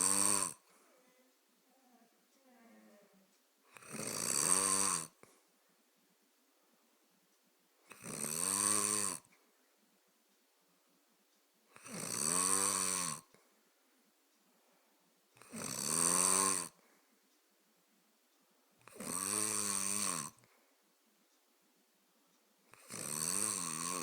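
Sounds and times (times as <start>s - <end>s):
person snoring: 0.0s - 0.7s, 3.7s - 5.3s, 7.9s - 9.3s, 11.7s - 13.4s, 15.4s - 16.8s, 18.8s - 20.4s, 22.7s - 24.0s.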